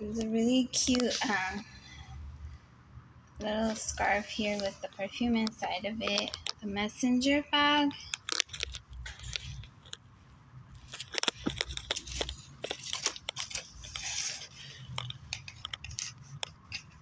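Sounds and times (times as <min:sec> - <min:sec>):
packaging crinkling and rustling: 0:08.0 - 0:10.1, 0:10.8 - 0:17.0.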